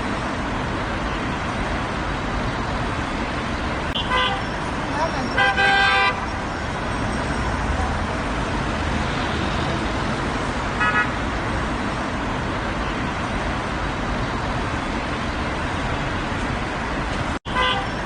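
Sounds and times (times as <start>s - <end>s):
road traffic passing cars: 0.0s - 18.0s
car horn toot: 4.0s - 4.5s, 5.3s - 6.3s, 10.8s - 11.2s, 17.5s - 18.0s.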